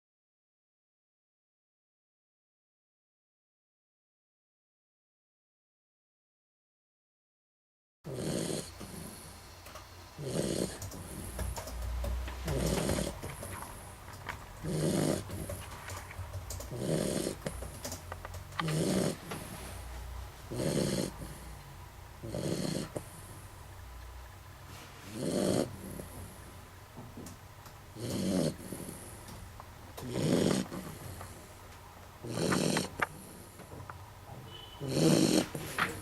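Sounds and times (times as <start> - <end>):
dog snoring: 8.1 - 9.5, 10.2 - 14.0, 14.6 - 15.8, 16.6 - 18.0, 18.6 - 19.9, 20.5 - 21.6, 22.2 - 23.5, 25.1 - 26.6, 27.9 - 29.3, 30.0 - 31.6, 32.2 - 33.8, 34.5 - 36.0.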